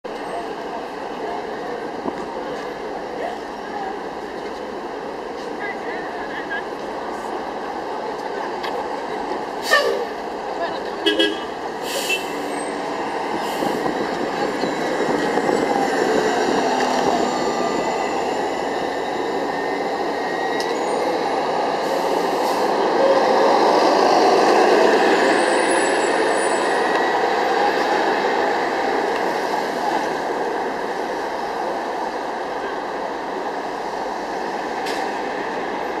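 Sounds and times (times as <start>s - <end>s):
street traffic: 0.0s - 36.0s.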